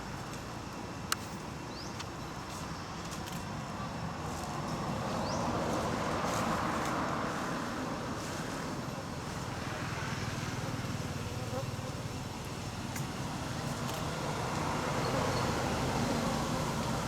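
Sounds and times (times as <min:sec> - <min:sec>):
road vehicle passing: 0:13.4 - 0:17.0.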